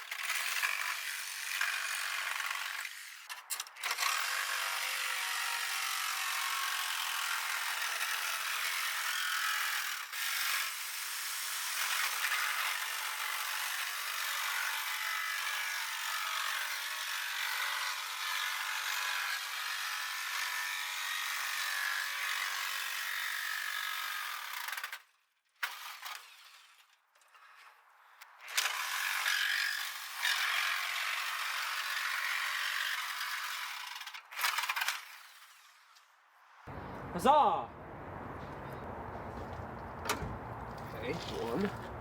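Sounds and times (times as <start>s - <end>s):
power tool cutting sheet steel: 0.0s - 25.0s, 28.4s - 36.1s.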